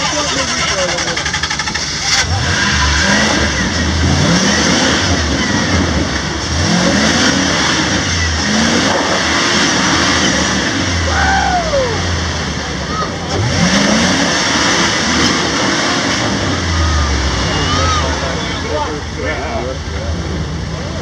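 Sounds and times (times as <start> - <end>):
engine revving in bursts: 0.0 - 21.0.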